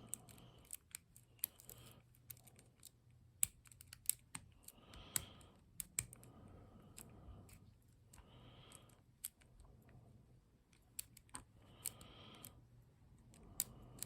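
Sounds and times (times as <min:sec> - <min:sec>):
lock pick clicking in padlock: 0:00.1 - 0:06.2.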